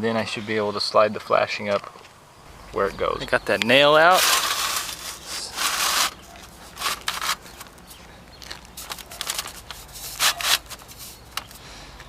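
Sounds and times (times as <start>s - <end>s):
metal flashing scraping under shingles: 3.3s - 11.7s.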